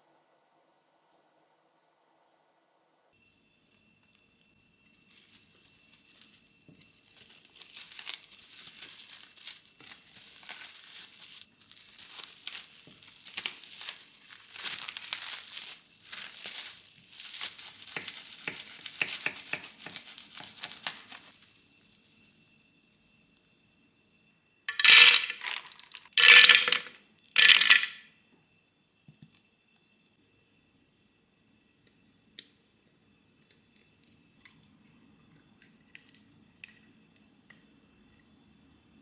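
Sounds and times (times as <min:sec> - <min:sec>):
packaging crinkling and tearing: 0:07.0 - 0:21.6, 0:24.7 - 0:27.9.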